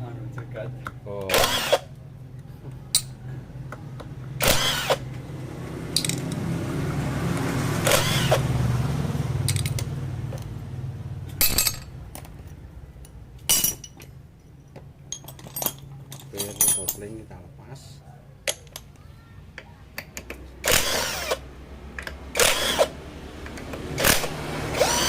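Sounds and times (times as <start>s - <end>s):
low motor hum: 20.4s - 25.0s.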